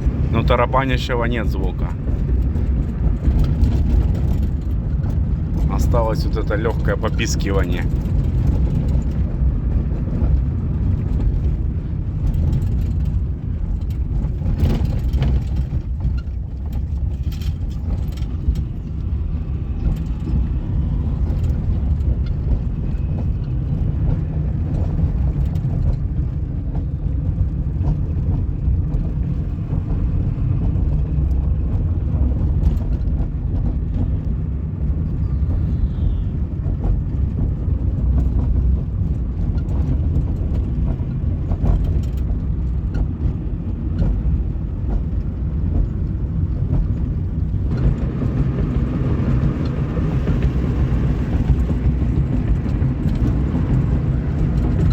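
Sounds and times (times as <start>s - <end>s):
road and engine rumble: 0.0s - 54.9s.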